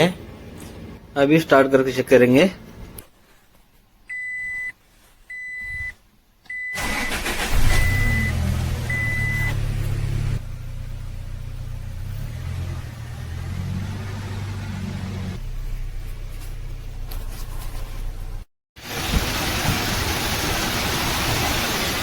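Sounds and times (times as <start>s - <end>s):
vehicle warning beeper: 4.1s - 9.7s
engine cranking and idling: 6.7s - 17.3s.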